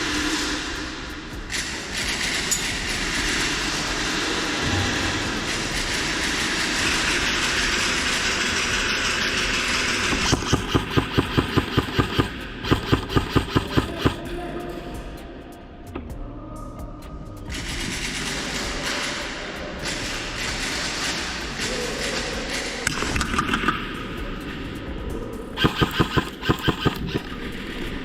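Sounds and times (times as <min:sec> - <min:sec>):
steady rushing noise: 0:04.0 - 0:13.0
rapid airsoft gun fire: 0:06.0 - 0:14.3, 0:25.6 - 0:27.9.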